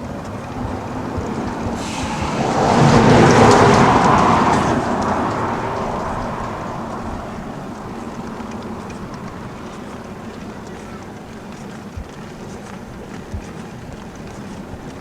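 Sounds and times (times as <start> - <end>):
vehicle passing on road: 0.0 - 11.7.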